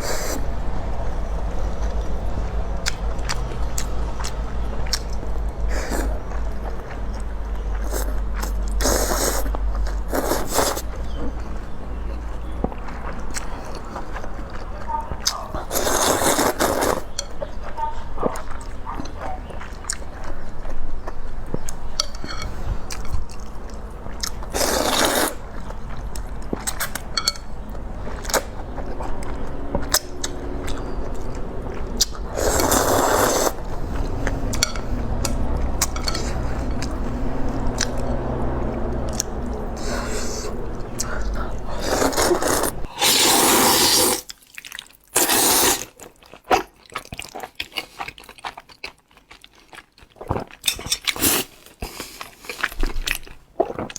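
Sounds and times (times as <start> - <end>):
chewing: 0.0 - 53.9
noodles slurped: 7.8 - 10.9, 15.4 - 17.2, 24.2 - 25.5, 32.0 - 34.7, 39.1 - 46.0, 50.2 - 53.9.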